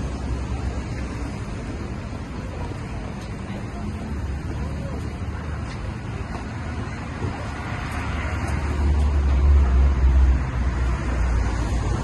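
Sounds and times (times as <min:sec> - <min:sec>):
road noise: 0:00.0 - 0:12.0.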